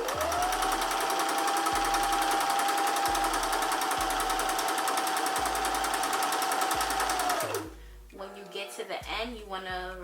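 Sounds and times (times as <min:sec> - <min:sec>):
sewing machine stitching: 0:00.0 - 0:07.7.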